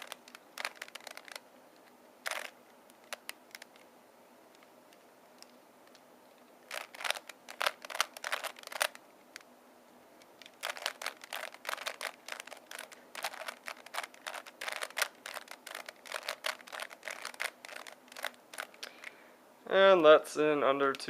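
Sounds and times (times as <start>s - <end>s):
puzzle cube clicking: 0.0s - 3.9s, 6.6s - 9.5s, 10.2s - 19.1s.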